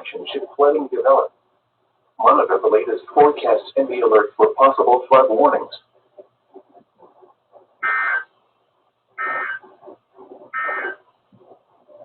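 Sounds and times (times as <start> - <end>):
digital two-tone data bursts: 7.8 - 8.3, 9.2 - 9.6, 10.5 - 11.0.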